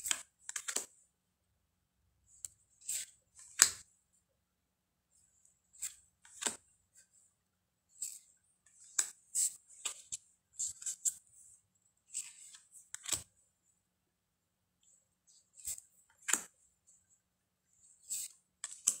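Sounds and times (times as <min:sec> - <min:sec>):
cards swishing and snapping: 0:05.8 - 0:06.6.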